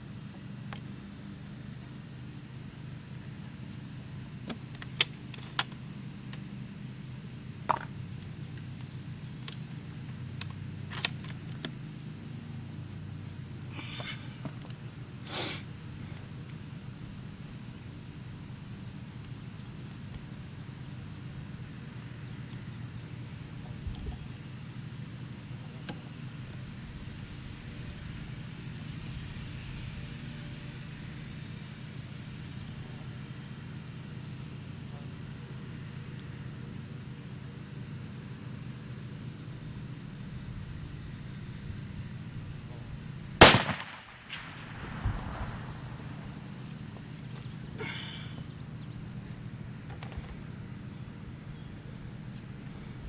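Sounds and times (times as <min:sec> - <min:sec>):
steady background hum: 0:00.0 - 0:53.0
rifle shot: 0:43.4 - 0:46.7.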